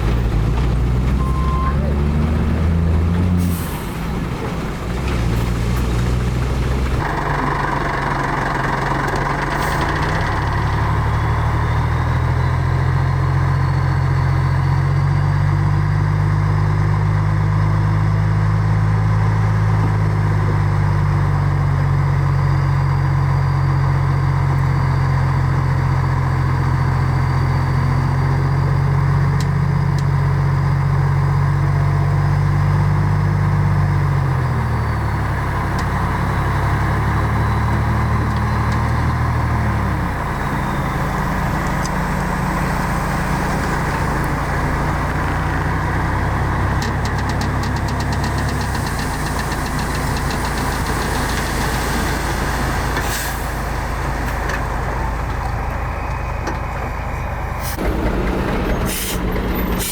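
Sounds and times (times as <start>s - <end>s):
heavy diesel engine droning: 0.0s - 59.9s
harsh mechanical noise: 46.7s - 53.2s, 54.2s - 59.9s.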